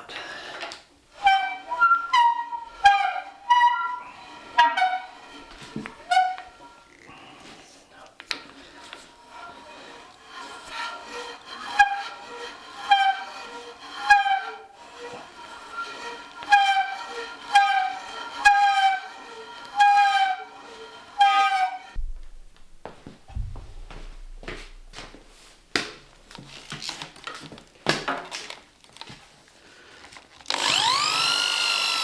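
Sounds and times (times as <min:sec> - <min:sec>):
drill bit squealing in wood: 0:01.1 - 0:07.1, 0:09.1 - 0:22.0, 0:30.5 - 0:32.0.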